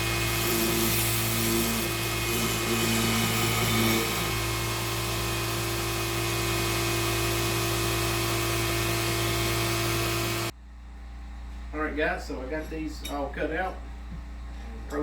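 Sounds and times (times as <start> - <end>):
belt grinder running: 0.0 - 10.5
steel blade grinding on belt: 0.0 - 10.5.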